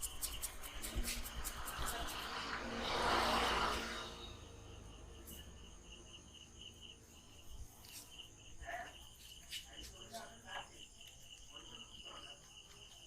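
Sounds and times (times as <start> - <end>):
insect chirping: 0.0 - 13.0
swell of noise: 0.3 - 5.6.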